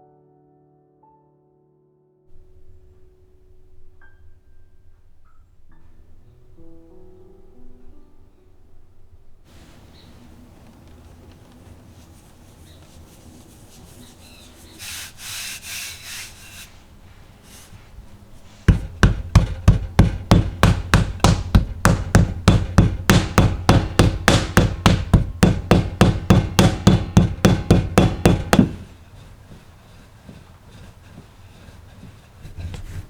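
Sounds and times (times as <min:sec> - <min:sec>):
soft rustling: 0:09.4 - 0:20.0, 0:28.3 - 0:33.0
knife chopping on wooden board: 0:18.7 - 0:29.0.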